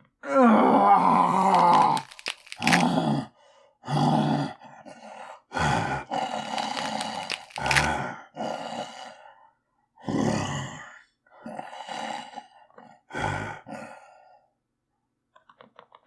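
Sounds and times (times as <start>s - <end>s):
man groaning and growling: 0.2s - 3.3s, 3.9s - 4.6s, 5.6s - 8.9s, 10.0s - 11.8s.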